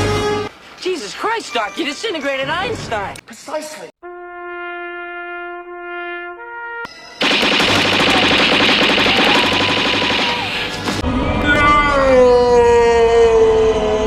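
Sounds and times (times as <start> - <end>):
held brass-like note: 4.0 - 7.2.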